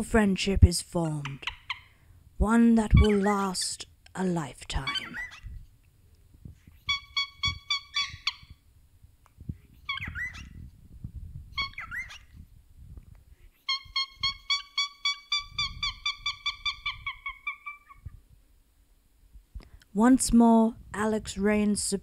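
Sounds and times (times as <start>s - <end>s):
cockatiel gliding calls: 4.9s - 5.5s, 6.7s - 8.6s, 9.8s - 10.6s, 11.6s - 12.4s, 13.6s - 18.1s
cockatiel honking: 4.9s - 5.5s, 6.8s - 8.6s, 9.8s - 10.5s, 11.6s - 12.3s, 13.6s - 18.1s.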